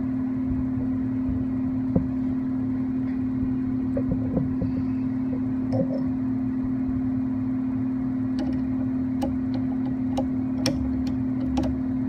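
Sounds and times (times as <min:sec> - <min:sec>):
machine hum: 0:00.0 - 0:12.0.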